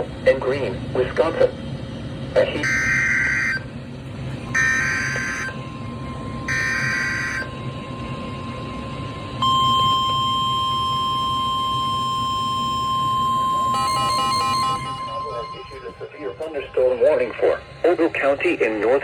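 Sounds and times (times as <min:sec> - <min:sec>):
steady warning alarm tone: 0:02.5 - 0:19.0
screechy data tones: 0:04.5 - 0:17.6.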